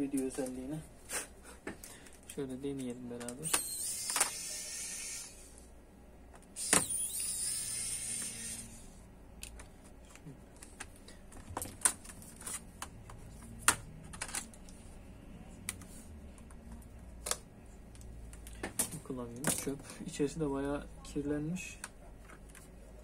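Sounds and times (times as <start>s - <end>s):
plastic laptop parts handled: 9.4s - 14.8s.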